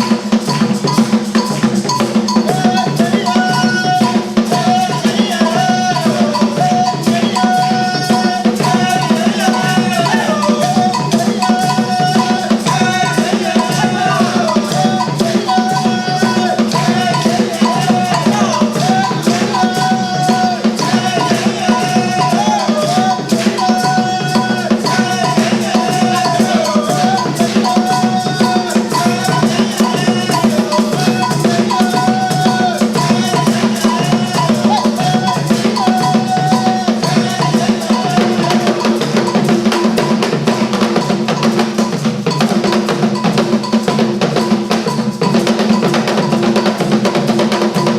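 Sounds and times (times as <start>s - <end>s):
drums and shakers rhythm: 0.0s - 47.9s.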